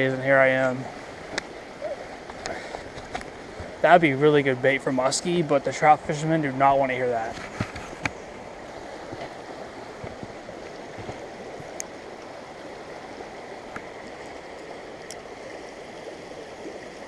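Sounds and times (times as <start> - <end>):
stream running over rocks: 0.0 - 17.0.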